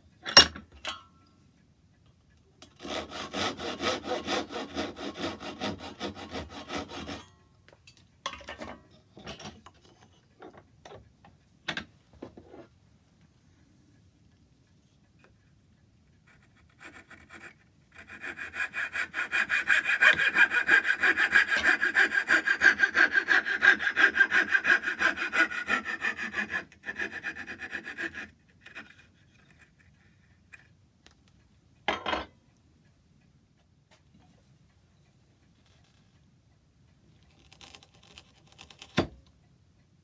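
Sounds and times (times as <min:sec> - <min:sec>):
hand saw cutting wood: 0:02.8 - 0:07.3, 0:16.3 - 0:29.8.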